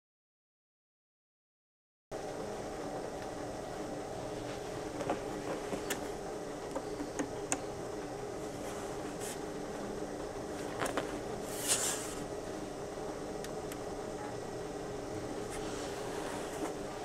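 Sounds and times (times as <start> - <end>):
hard drive whirring: 2.2 - 17.0
hard drive clicks: 4.5 - 8.2, 13.4 - 14.6.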